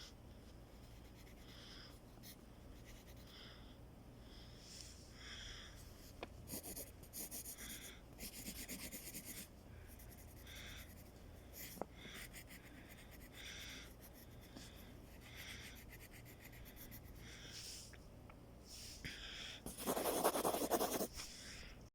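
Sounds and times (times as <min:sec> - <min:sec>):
pen writing on paper: 0:19.7 - 0:21.1.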